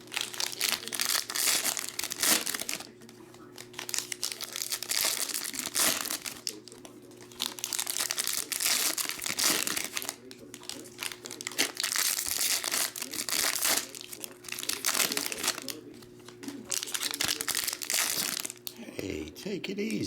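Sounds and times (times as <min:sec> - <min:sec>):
foil wrappers crinkling and tearing: 0:00.0 - 0:18.7
cards being handled: 0:05.8 - 0:18.5.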